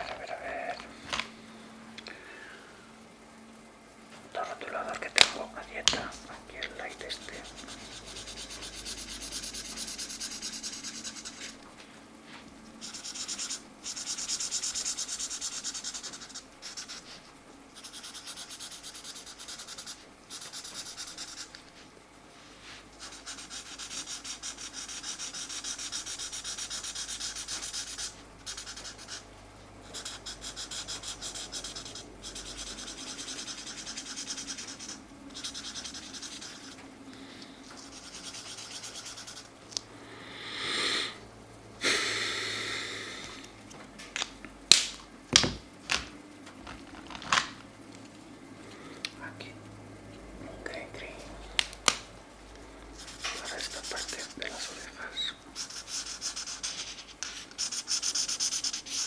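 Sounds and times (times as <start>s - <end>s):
marker scratching on paper: 4.4s - 11.6s, 12.2s - 21.8s, 22.4s - 36.8s, 37.8s - 39.6s, 53.0s - 59.0s.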